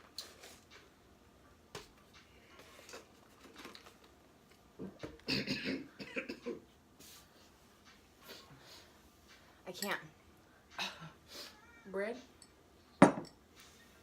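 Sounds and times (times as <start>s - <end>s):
person coughing: 5.3s - 6.6s.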